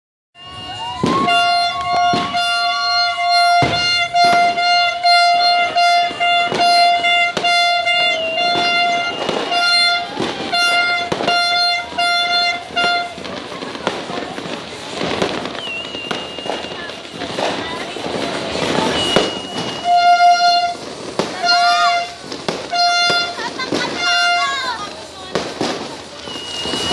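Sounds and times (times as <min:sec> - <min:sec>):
horn long held note: 0:00.4 - 0:13.1, 0:19.1 - 0:23.4
fireworks banging: 0:00.4 - 0:26.9.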